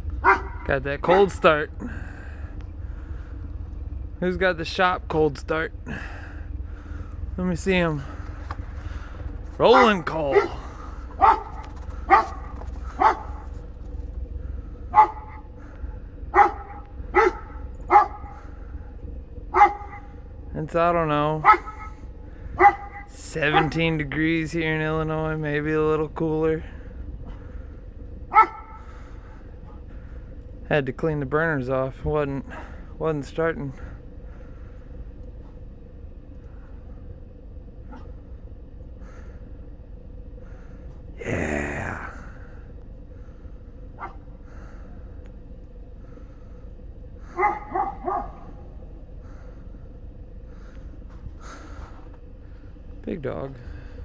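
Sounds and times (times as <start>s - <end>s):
steady low rumble: 0.0s - 54.0s
dog barking: 0.2s - 1.5s, 9.6s - 13.6s, 14.9s - 15.5s, 16.3s - 18.4s, 19.5s - 20.2s, 21.4s - 22.0s, 22.6s - 23.8s, 28.3s - 28.8s, 44.0s - 44.2s, 47.3s - 48.7s.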